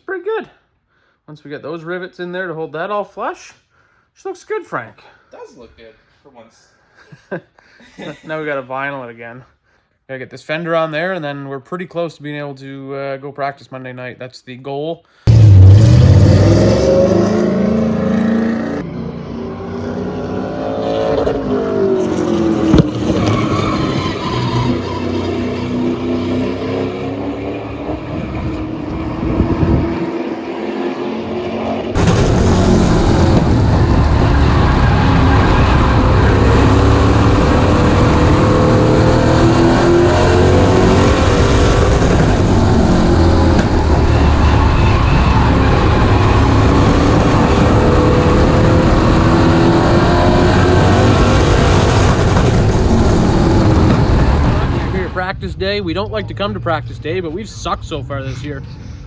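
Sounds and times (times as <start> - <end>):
race car engine on track: 15.3 - 59.0.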